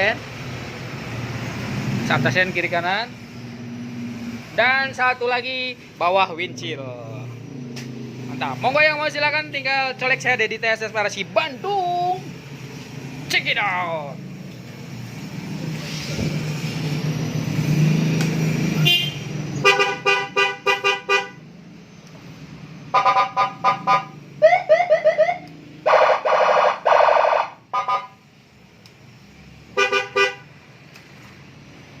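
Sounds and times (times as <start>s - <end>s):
electronic siren and horn blasts: 22.9s - 28.2s.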